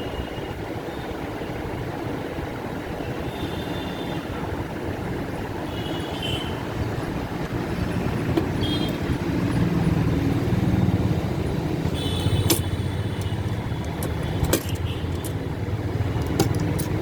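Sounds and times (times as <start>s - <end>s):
low rumbling background noise: 4.2s - 17.0s.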